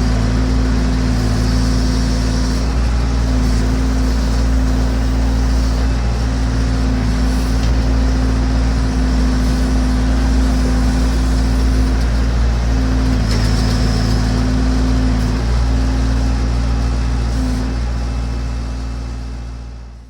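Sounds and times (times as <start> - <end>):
backhoe engine running: 0.0 - 20.0.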